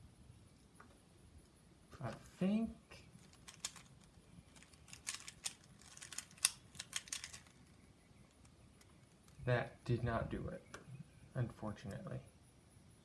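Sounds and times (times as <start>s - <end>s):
plastic cube layers clicking: 3.2s - 7.7s.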